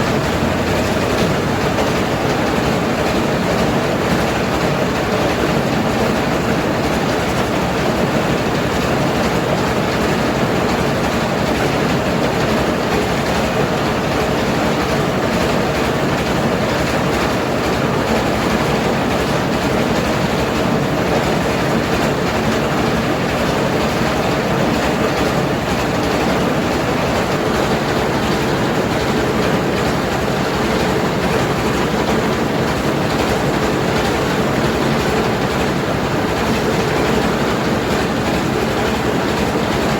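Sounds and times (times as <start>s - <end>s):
rice milling machine running: 0.0s - 39.9s.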